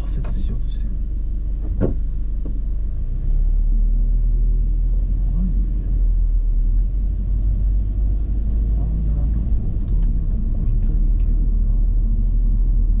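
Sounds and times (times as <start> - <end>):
car engine rumble: 0.0 - 13.0
road noise: 0.0 - 13.0
brief thump: 1.6 - 2.6.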